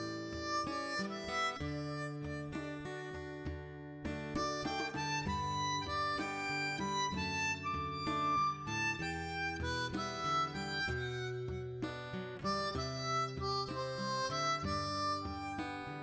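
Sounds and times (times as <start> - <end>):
instrumental background music: 0.0 - 16.0.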